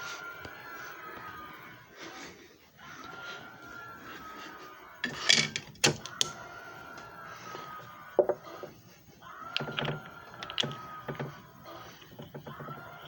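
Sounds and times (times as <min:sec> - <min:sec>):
sharp clicks and knocks: 0:09.5 - 0:13.0.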